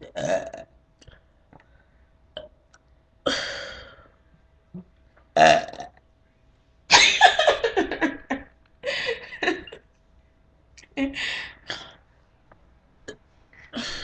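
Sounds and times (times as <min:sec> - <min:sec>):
person burping loudly: 0:00.0 - 0:00.7, 0:05.4 - 0:05.9.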